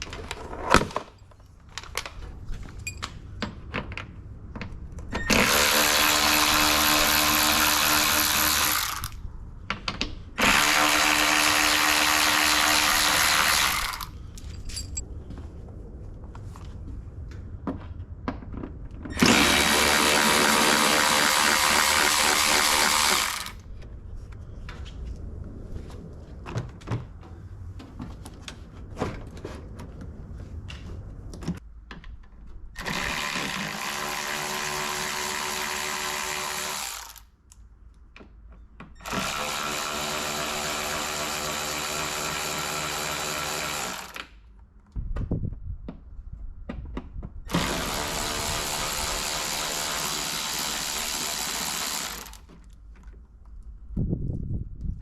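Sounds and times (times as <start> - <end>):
power drill driving screws: 5.2 - 9.2, 10.4 - 14.1, 19.1 - 23.6, 32.8 - 37.2, 39.0 - 44.3, 47.5 - 52.5.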